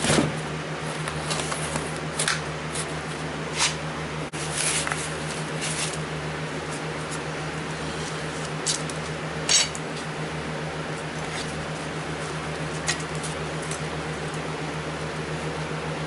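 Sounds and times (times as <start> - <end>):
steady low hum: 0.0 - 16.0.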